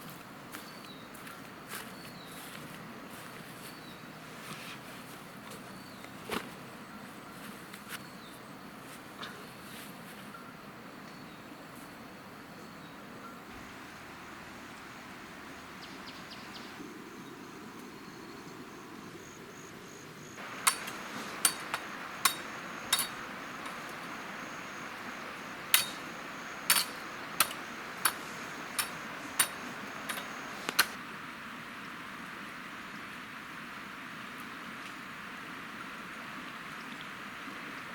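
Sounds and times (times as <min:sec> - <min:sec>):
steady hiss: 0:13.4 - 0:34.2
sharp knocks: 0:20.4 - 0:24.1, 0:25.6 - 0:31.0.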